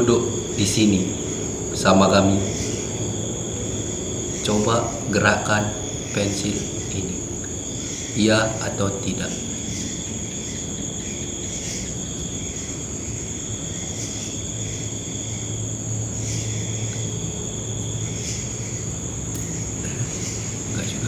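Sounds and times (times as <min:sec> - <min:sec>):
crickets trilling: 0:00.0 - 0:21.0
low steady hum: 0:00.0 - 0:21.0
faint clicks: 0:19.3 - 0:20.1.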